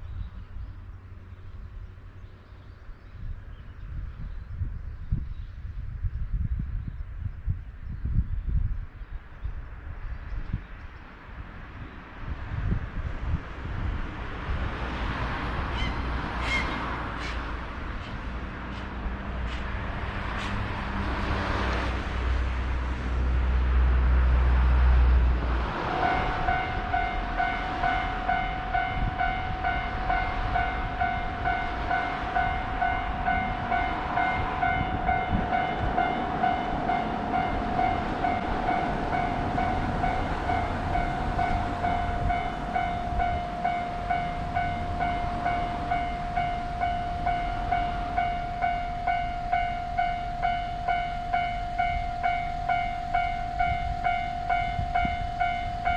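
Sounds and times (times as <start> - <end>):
vehicle engine rumble: 0.0 - 55.9
level-crossing alarm dinging: 25.9 - 55.9.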